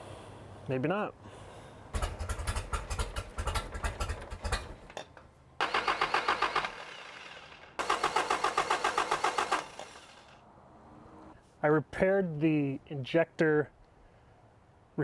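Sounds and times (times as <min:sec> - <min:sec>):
engine cranking by starter: 0:02.0 - 0:10.4.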